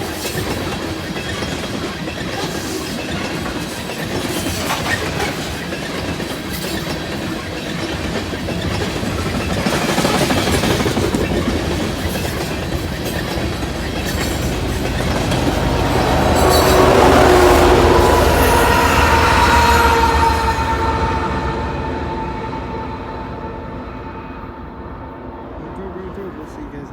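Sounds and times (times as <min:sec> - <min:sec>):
train wheels clacking over rail joints: 0:00.0 - 0:19.8
wheel squeal: 0:15.8 - 0:21.2.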